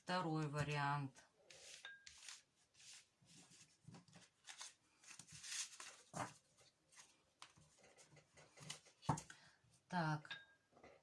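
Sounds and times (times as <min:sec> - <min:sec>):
cards being shuffled: 0:01.5 - 0:03.1, 0:03.9 - 0:07.6.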